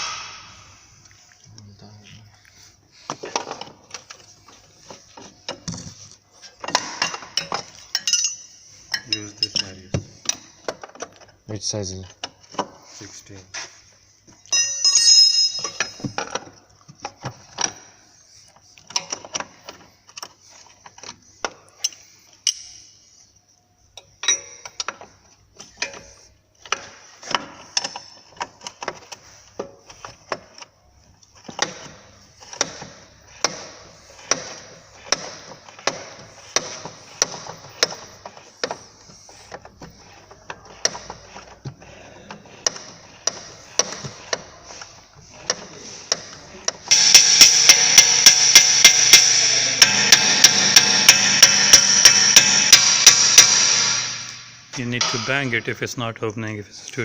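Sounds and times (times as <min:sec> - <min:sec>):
tool knocking against metal: 0:46.9 - 0:54.3
ratchet wrench clicking: 0:46.9 - 0:54.4.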